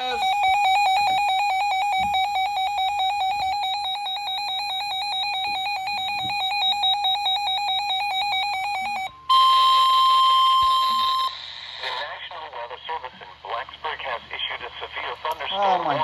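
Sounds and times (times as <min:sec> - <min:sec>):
steady alarm beep: 0:00.0 - 0:12.0
buzzy warbling electronic alarm: 0:00.0 - 0:12.1
radio hiss: 0:10.9 - 0:16.0.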